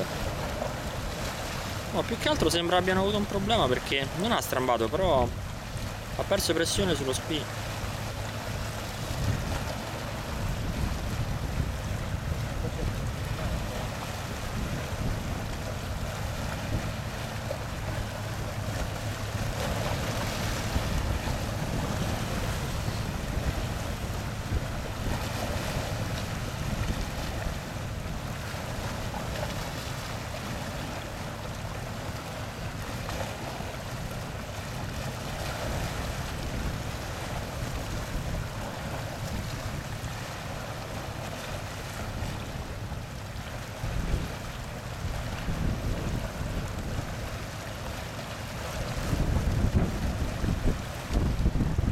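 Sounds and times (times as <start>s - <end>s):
water and waves rushing: 0.0s - 51.9s
wind buffeting microphone: 7.7s - 29.6s, 43.8s - 47.6s, 48.6s - 51.9s.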